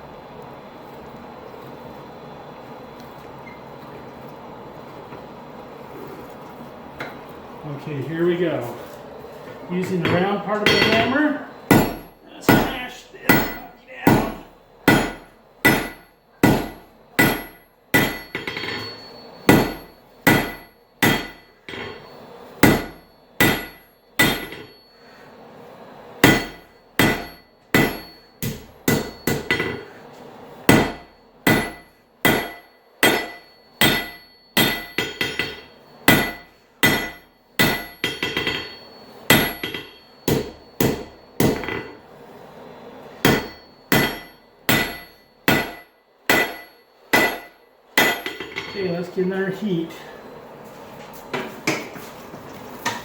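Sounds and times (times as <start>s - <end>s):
hammer striking hot metal on anvil: 9.8s - 24.9s, 26.2s - 29.9s, 30.6s - 42.0s, 43.2s - 49.1s.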